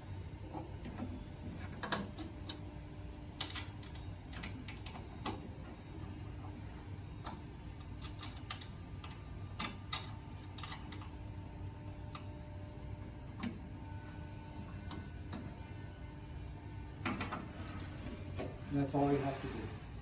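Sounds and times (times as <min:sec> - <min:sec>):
steady low hum: 0:00.0 - 0:20.0
hex key clicking on screws: 0:08.0 - 0:11.1.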